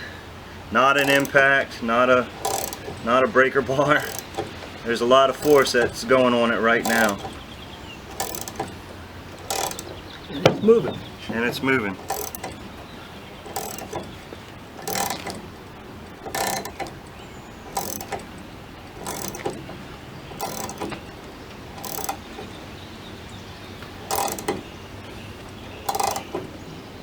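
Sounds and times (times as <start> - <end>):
ratchet wrench clicking: 1.0 - 1.6, 2.2 - 10.2, 12.0 - 22.6, 23.9 - 25.2, 25.8 - 26.4.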